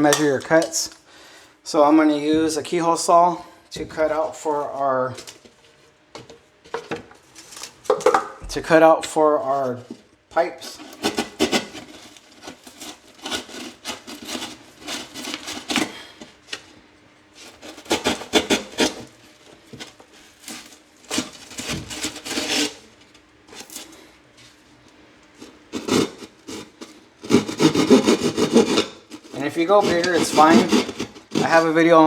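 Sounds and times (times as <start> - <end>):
keyhole saw rasping through drywall: 10.6 - 16.2, 17.4 - 22.9, 25.4 - 31.8.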